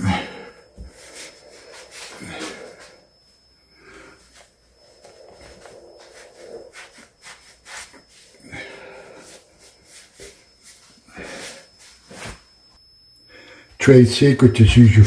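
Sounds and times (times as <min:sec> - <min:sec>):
soft rubbing and scraping: 0:00.0 - 0:12.8.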